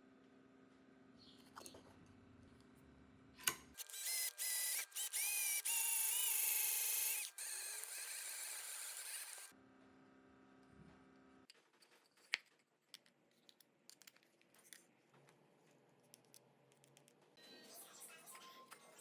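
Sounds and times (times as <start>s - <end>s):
electric drill motor whining: 3.8s - 9.5s.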